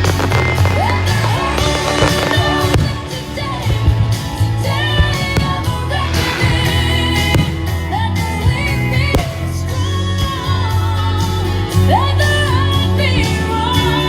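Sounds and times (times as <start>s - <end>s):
pop song with singing: 0.0s - 14.0s.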